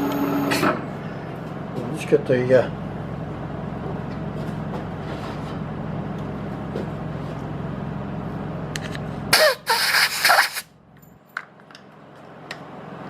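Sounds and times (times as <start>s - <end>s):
compressed air blasts: 9.3s - 10.7s.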